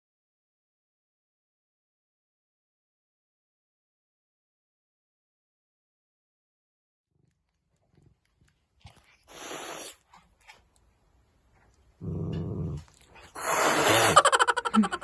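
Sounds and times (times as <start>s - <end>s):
pet animal growling: 12.0s - 15.0s.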